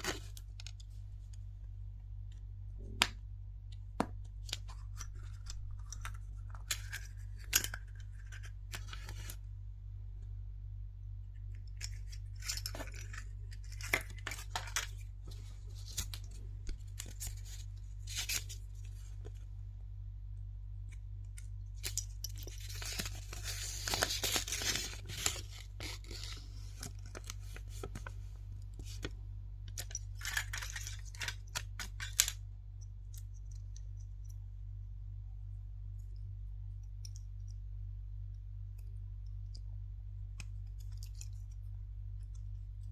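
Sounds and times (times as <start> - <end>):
steady low hum: 0.0 - 42.9
wrapper crinkling and tearing: 15.8 - 18.6, 21.8 - 28.1.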